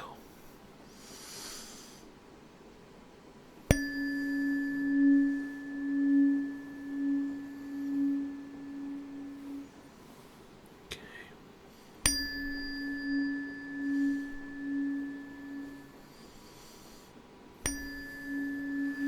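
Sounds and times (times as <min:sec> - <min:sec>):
tuning fork ringing: 0:03.7 - 0:10.1, 0:12.0 - 0:16.8, 0:17.6 - 0:19.0.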